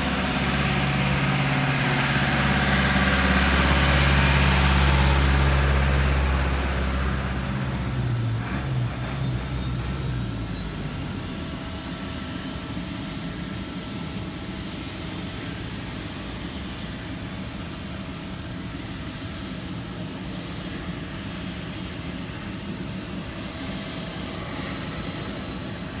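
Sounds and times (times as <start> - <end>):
loud low rumble: 0.0 - 5.0
jet engines whining: 0.0 - 8.4.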